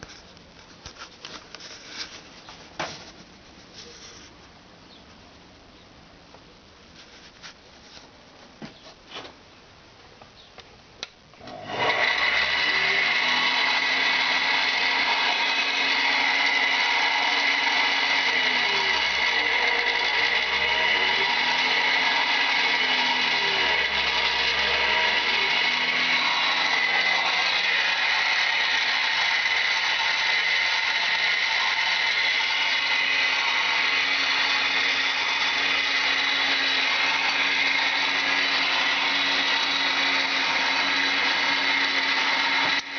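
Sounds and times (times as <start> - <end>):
lathe electric motor running: 11.4 - 42.9.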